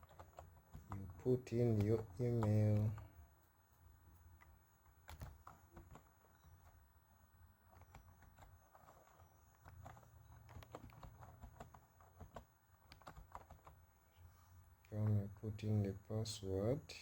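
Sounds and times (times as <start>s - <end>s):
computer keyboard keystrokes: 0.0s - 3.0s, 5.0s - 6.7s, 7.7s - 13.8s
low steady hum: 0.0s - 17.0s.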